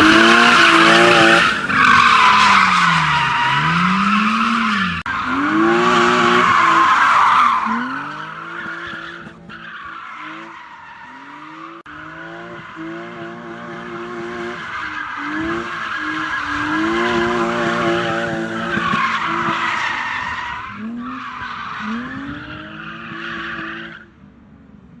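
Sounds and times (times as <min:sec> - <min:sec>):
car engine revving: 0:00.0 - 0:09.6.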